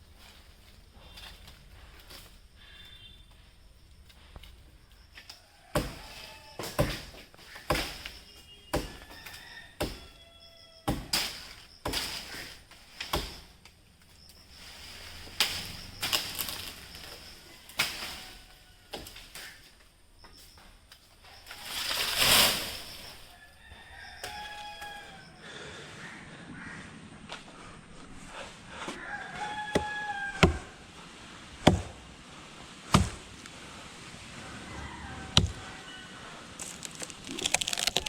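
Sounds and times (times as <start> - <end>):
chopping dry wood: 5.8 - 10.1, 10.9 - 12.3, 13.0 - 13.5, 28.9 - 30.8, 31.6 - 32.0, 32.9 - 33.5, 35.3 - 35.7, 36.6 - 38.0.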